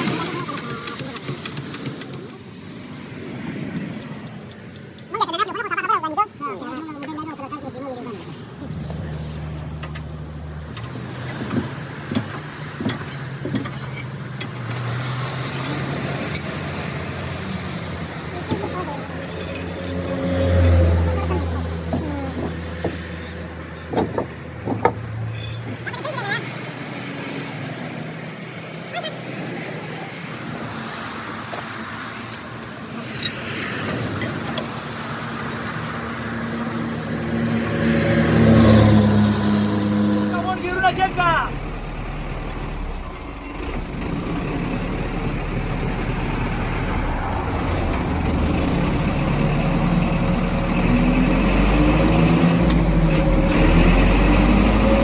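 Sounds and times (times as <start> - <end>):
metal clinks and knocks: 0.0 - 2.4, 9.8 - 16.7, 18.4 - 26.3
truck diesel engine running: 0.0 - 2.5, 34.6 - 55.0
engine running: 0.0 - 29.2, 30.0 - 55.0.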